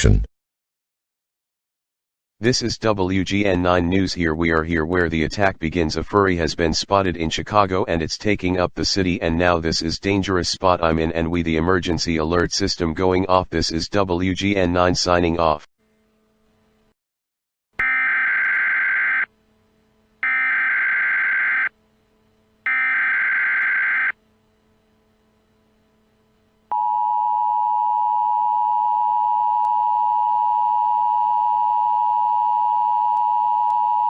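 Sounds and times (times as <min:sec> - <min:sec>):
steady two-tone attention signal: 0:26.7 - 0:34.0.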